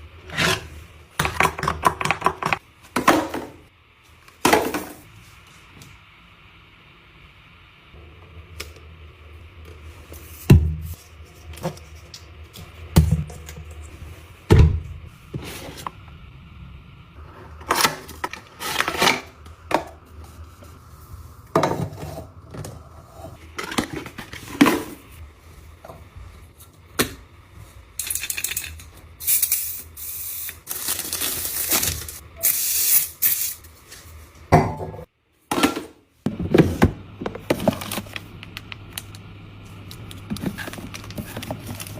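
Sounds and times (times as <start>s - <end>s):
containers clicking and knocking: 1.2s - 3.5s
packaging rustling: 30.6s - 32.2s, 39.9s - 41.9s.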